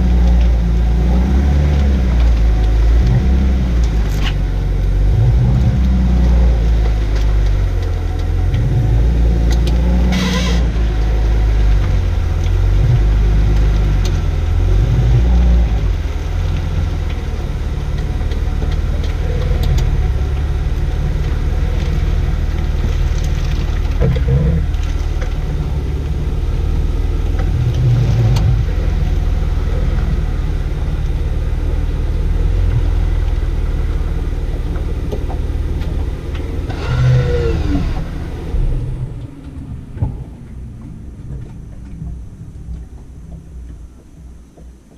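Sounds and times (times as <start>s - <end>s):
car road and engine rumble: 0.0s - 44.9s.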